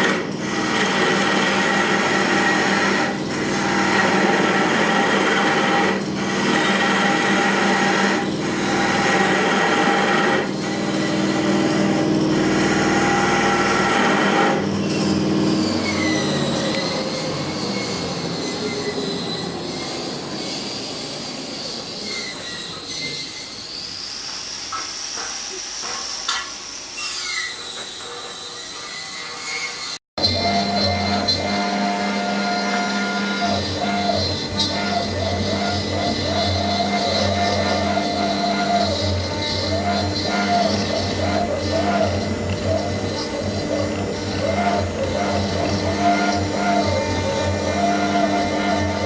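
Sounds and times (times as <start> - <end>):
lathe motor hum: 0.0 - 20.4, 30.2 - 49.0
cutter rasping on wood: 0.0 - 20.5, 27.5 - 49.0.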